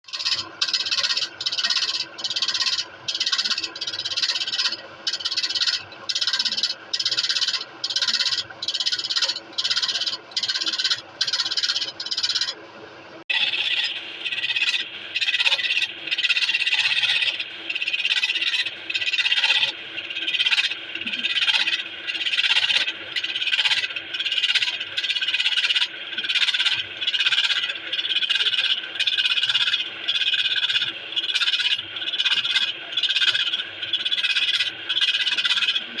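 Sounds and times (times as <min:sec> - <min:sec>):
woodworking machine rasping wood: 0:00.2 - 0:12.5.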